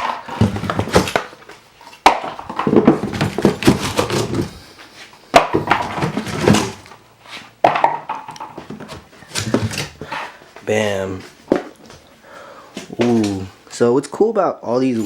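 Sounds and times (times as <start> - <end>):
packing rustling and scraping: 0.0 - 4.9, 5.7 - 7.6.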